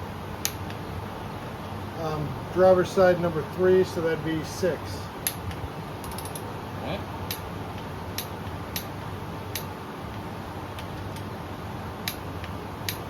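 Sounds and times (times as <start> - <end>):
steady background hum: 0.0 - 13.0
torque wrench clicks: 5.2 - 6.4.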